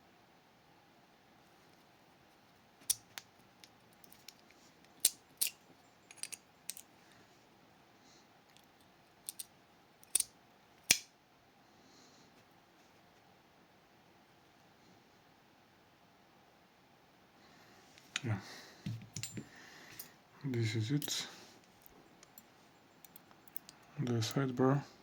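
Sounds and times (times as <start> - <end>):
small metal lock parts clicking: 2.8 - 6.9, 8.5 - 11.1, 19.1 - 19.5, 23.0 - 24.4.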